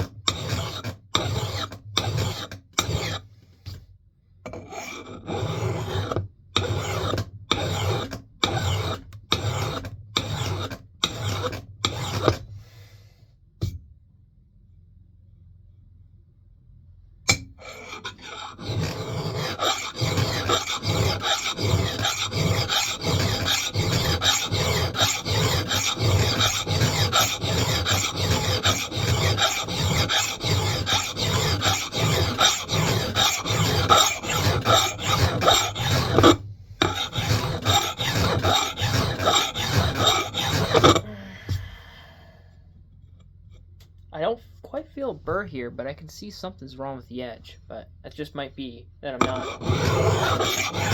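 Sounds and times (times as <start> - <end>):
hand file rasping on steel: 0.0 - 3.3, 4.5 - 12.5, 17.3 - 41.1, 49.2 - 50.9.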